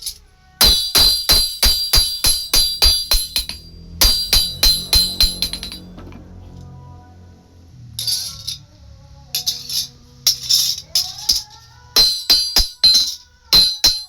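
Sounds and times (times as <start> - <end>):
sharp ringing strikes: 0.6 - 6.3, 12.0 - 14.0.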